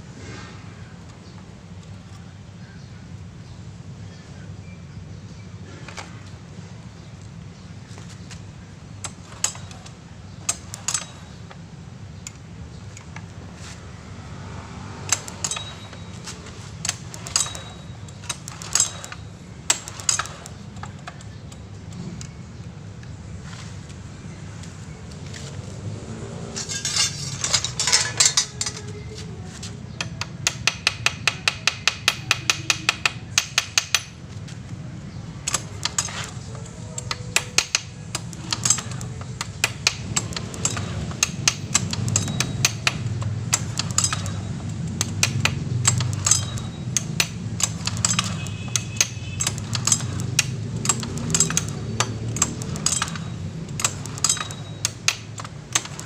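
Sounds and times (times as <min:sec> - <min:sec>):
hand tools clicking on metal: 0:09.0 - 0:11.6, 0:15.0 - 0:22.4, 0:26.5 - 0:56.0.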